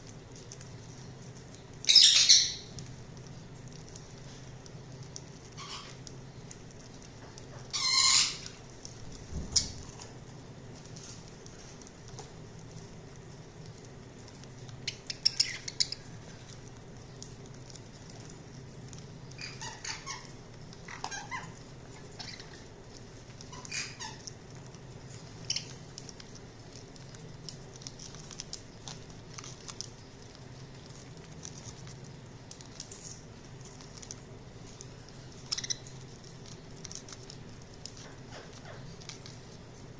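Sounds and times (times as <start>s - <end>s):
low steady hum: 0.0s - 39.9s
small ticks: 0.0s - 39.9s
budgerigars chirping: 1.9s - 2.7s, 7.8s - 8.5s.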